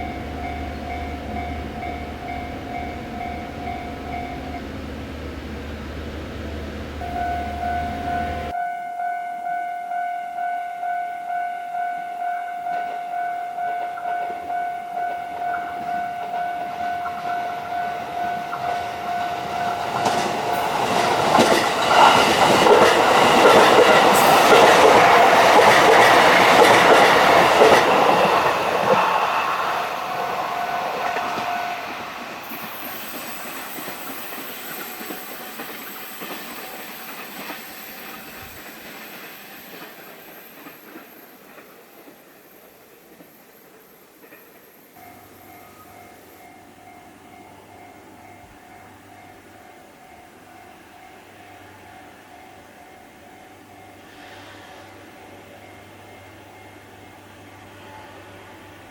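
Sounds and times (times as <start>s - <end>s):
level-crossing warning bell ringing: 0.0s - 5.4s, 7.0s - 54.1s, 55.0s - 58.2s
rail clicks: 0.0s - 8.6s, 12.3s - 50.8s
rail machine running noise: 0.0s - 58.9s.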